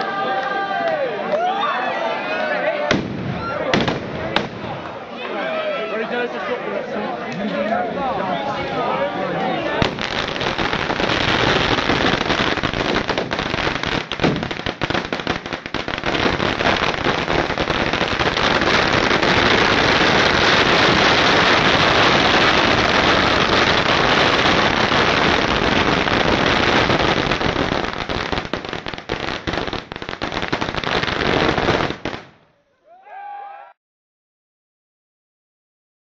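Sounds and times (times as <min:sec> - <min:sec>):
firecrackers crackling: 0:02.8 - 0:05.0, 0:09.8 - 0:32.4.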